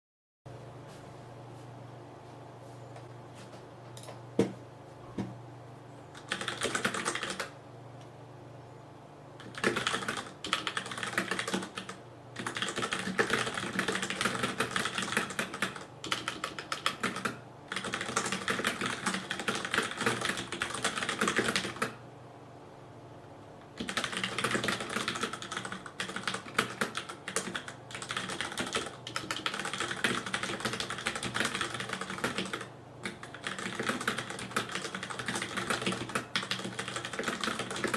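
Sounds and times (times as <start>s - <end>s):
fast mechanical keyboard typing: 6.2s - 7.5s, 9.4s - 22.0s, 23.8s - 37.9s.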